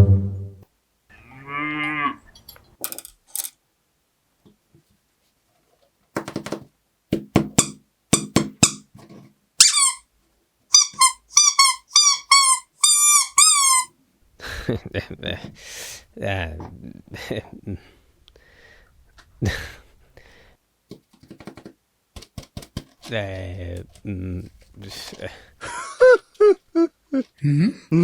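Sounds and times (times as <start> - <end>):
falling pitch squeaks: 9.6 - 10.0, 10.7 - 13.9.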